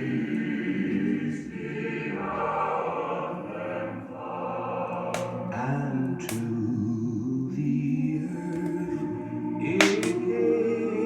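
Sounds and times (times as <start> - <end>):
choral voices singing: 0.0 - 11.0
sharp click: 5.2 - 5.4, 6.3 - 6.5, 9.8 - 10.2.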